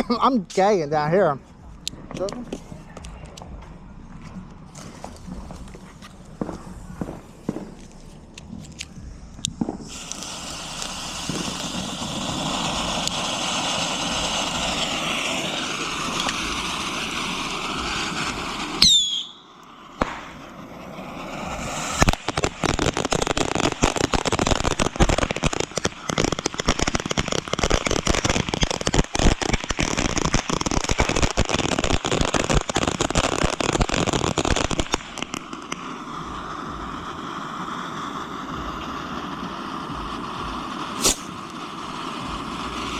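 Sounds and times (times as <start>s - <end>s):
fireworks crackling pops: 0.0s - 42.9s
fireworks hissing spray: 4.7s - 42.9s
firework whistle: 9.6s - 25.0s, 34.4s - 42.9s.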